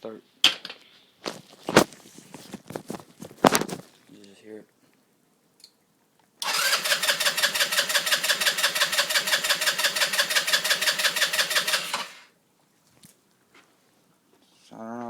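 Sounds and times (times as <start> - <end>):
scooter engine cranking: 6.4 - 12.3.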